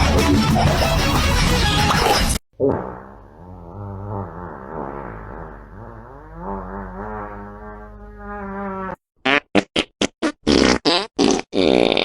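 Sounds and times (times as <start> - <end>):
long low fart: 2.6 - 12.0.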